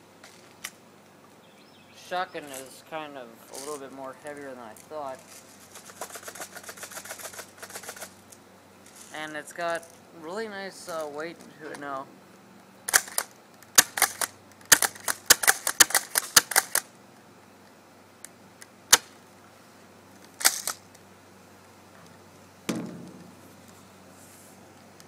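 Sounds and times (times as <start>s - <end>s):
airsoft shotgun pump clicking: 12.9s - 16.9s
dull knock: 22.7s - 23.4s.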